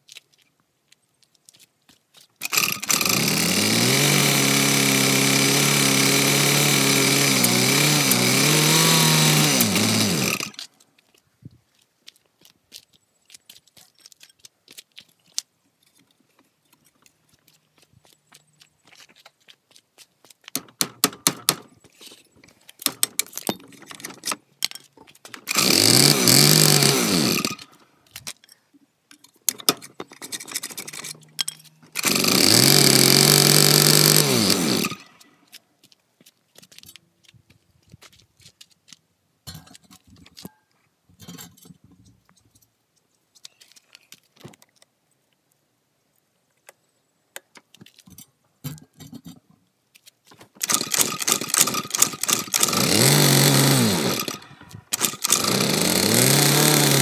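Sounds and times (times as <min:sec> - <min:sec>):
small motor spinning: 0:02.4 - 0:10.6, 0:25.5 - 0:27.7, 0:31.9 - 0:35.2, 0:50.6 - 0:57.0
clicks and rattles of handling: 0:20.4 - 0:25.6, 0:28.0 - 0:32.1, 0:35.0 - 0:45.5.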